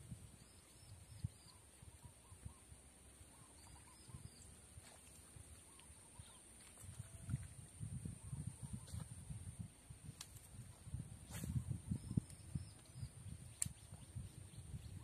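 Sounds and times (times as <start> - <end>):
soft bird chirps: 0.4 - 4.7, 5.6 - 7.3, 11.5 - 15.0.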